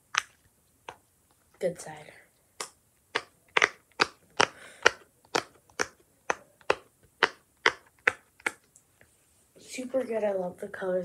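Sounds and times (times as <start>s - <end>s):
fidget toy bubbles popping: 2.6s - 5.9s.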